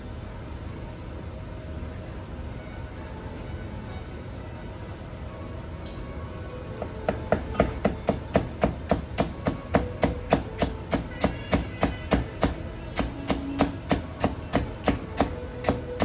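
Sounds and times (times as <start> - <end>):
knife chopping on cutting board: 6.8 - 16.0.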